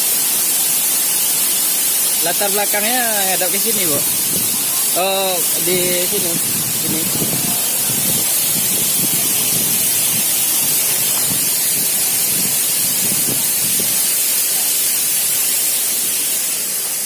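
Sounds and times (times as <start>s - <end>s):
waterfall rushing: 0.0s - 17.0s
faint voices: 3.4s - 12.6s.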